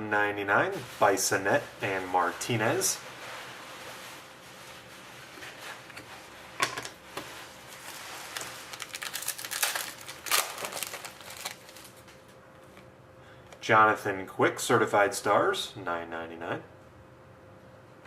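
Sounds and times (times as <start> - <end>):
plastic wrapper crinkling and tearing: 7.7 - 12.3.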